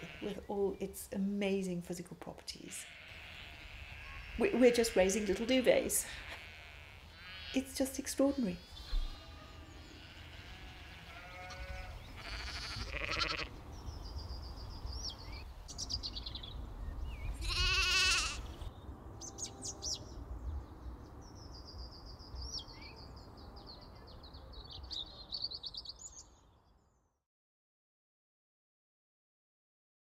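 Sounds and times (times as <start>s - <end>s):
sheep bleating: 0.0s - 0.4s, 2.7s - 7.7s, 8.6s - 13.6s, 17.4s - 18.6s
birds singing: 2.7s - 27.0s.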